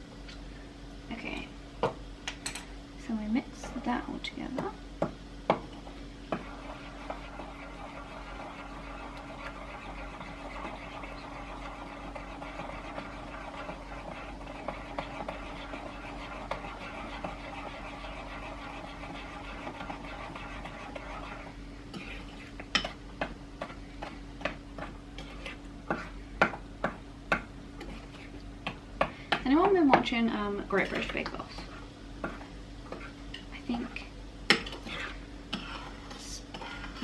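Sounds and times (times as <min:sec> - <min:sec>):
electric mixer running: 0:06.3 - 0:21.5.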